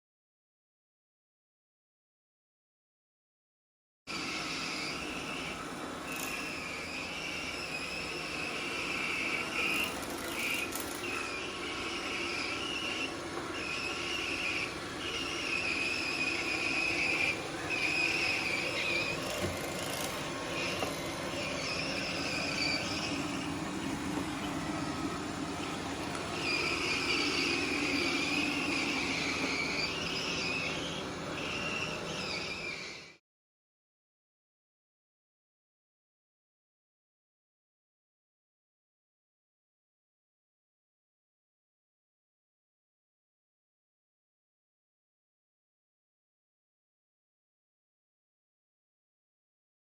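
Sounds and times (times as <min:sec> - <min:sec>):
robot vacuum motor and brushes: 0:04.1 - 0:33.1
high-pitched wavering squeak: 0:12.0 - 0:23.6, 0:26.4 - 0:33.2.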